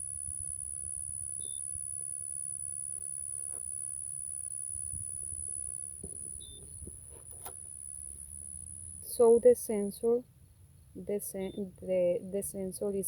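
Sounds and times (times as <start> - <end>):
high-pitched insect drone: 0.0 - 6.8.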